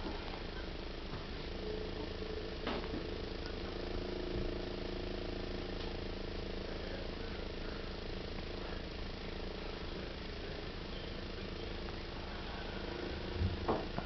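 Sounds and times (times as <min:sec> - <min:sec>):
low mechanical hum: 0:00.0 - 0:14.0.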